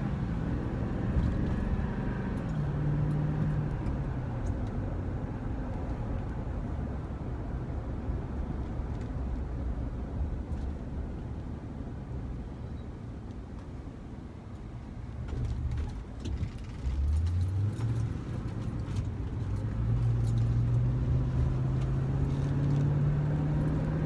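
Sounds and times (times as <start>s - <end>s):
passing vehicle engine: 0.0s - 5.6s, 16.8s - 24.0s
road traffic rumble: 0.0s - 24.0s.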